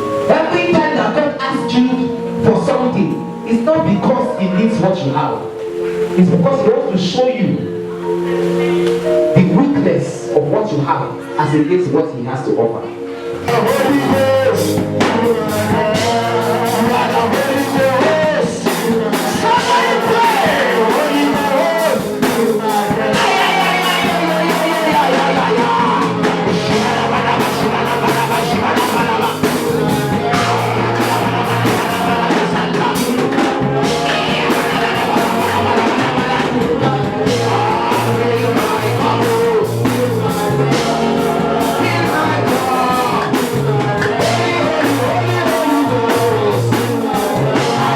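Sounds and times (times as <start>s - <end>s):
voices singing: 0.0s - 47.9s
band with drums: 13.4s - 47.9s.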